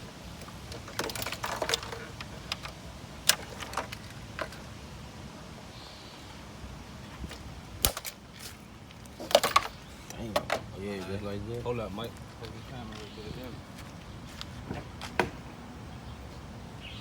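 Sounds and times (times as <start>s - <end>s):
metal tools clinking: 0.3s - 4.7s, 7.2s - 11.1s.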